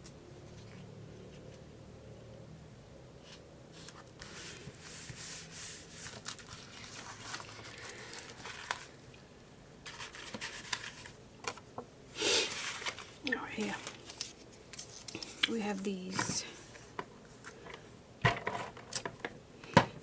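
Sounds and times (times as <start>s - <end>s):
paper sheets rustling: 3.8s - 9.0s, 9.8s - 11.6s, 12.4s - 17.6s.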